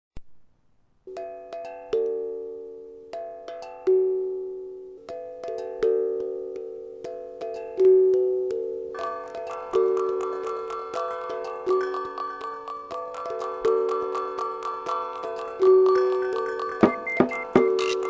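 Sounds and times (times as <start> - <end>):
repeating three-note instrumental figure: 16.8 - 18.0.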